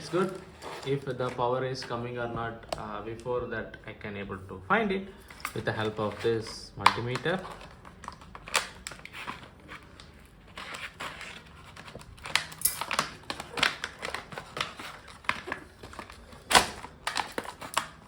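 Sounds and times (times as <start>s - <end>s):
packaging crinkling: 5.3s - 18.0s.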